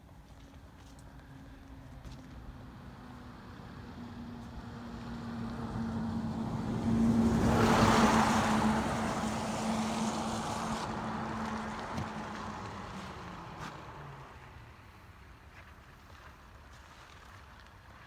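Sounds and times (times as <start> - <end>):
vehicle engine passing by: 2.4 - 14.8.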